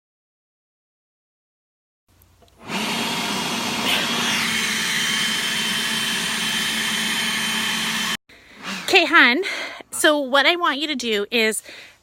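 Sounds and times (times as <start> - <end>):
cordless blower whining: 2.4 - 8.2.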